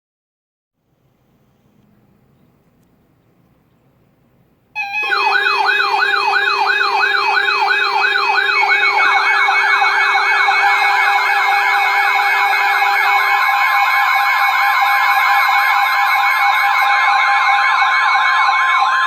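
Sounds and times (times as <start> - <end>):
electronic siren alert tone: 4.8 - 19.0.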